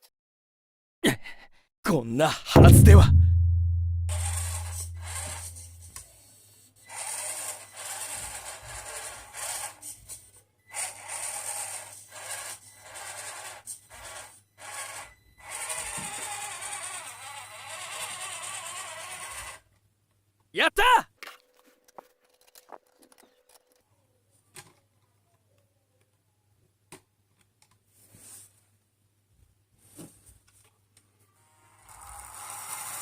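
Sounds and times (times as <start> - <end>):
low hum: 2.6 - 5.8.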